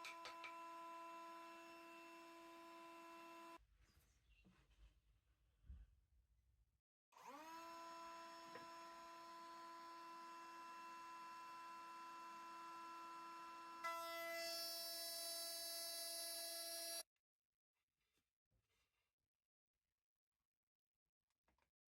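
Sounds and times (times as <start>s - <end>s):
router bit cutting wood: 0.0s - 3.6s, 7.2s - 17.0s
wood router whining: 0.0s - 3.6s, 7.2s - 17.0s.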